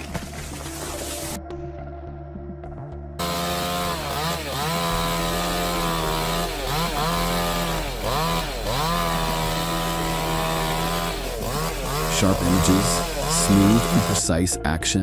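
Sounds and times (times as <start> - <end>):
chainsaw engine at high revs: 3.2 - 14.3.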